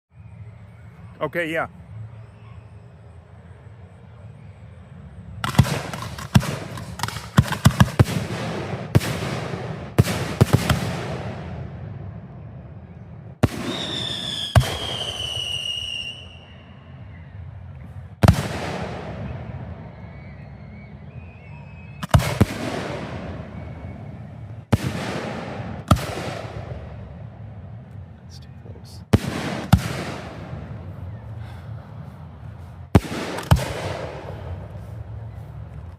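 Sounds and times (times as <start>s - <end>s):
fireworks bangs crackling: 5.4s - 11.5s, 13.4s - 16.3s, 22.0s - 23.8s, 24.7s - 26.9s, 29.0s - 30.8s, 32.9s - 35.1s
whistling firework shell: 13.5s - 17.3s, 18.4s - 25.0s.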